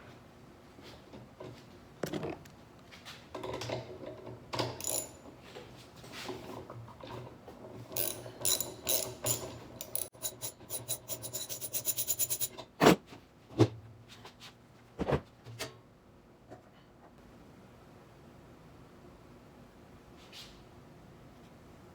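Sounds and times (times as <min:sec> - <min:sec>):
socket ratchet clicking: 0:04.8 - 0:05.2, 0:08.0 - 0:12.5.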